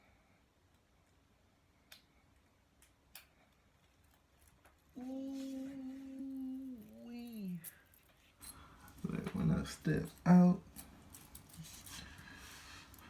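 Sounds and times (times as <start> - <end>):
man humming held note: 5.0 - 7.7.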